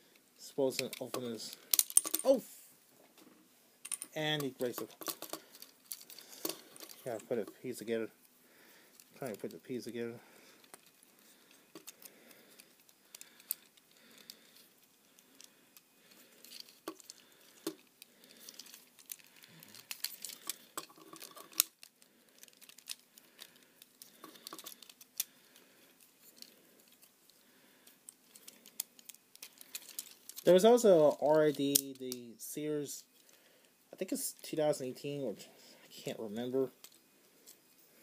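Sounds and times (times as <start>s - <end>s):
plastic toy parts clicking and rattling: 0.8s - 2.4s, 3.8s - 7.6s, 10.5s - 32.1s, 36.6s - 37.6s.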